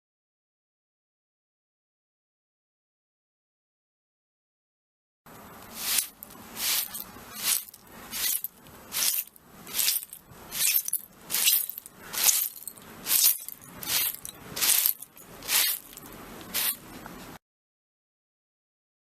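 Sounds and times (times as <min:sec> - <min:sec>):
broom sweeping broken glass: 0:05.6 - 0:17.0.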